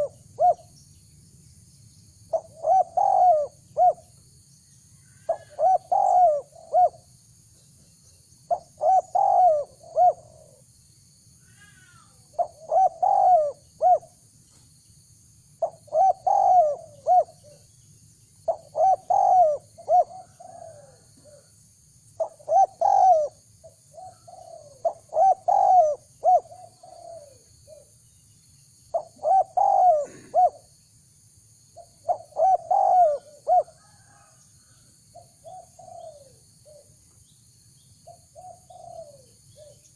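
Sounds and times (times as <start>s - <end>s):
dove cooing: 0.0s - 0.8s, 2.3s - 4.2s, 5.0s - 7.1s, 8.5s - 10.7s, 11.5s - 14.2s, 15.6s - 17.8s, 18.4s - 21.6s, 22.2s - 28.0s, 28.9s - 30.8s, 31.8s - 37.1s, 38.0s - 39.9s.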